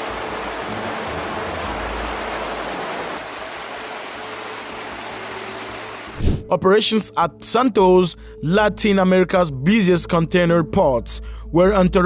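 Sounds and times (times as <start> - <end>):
water rushing: 0.0 - 6.4.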